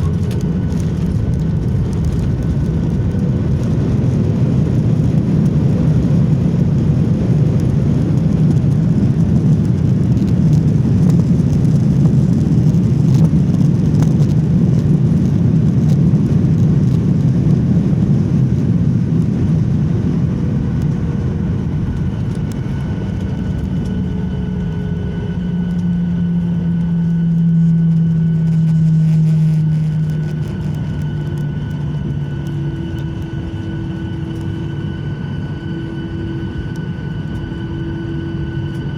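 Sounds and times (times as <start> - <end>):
jet engine tones: 0.0 - 5.3, 19.9 - 38.9
airliner cabin rumble: 0.0 - 38.9.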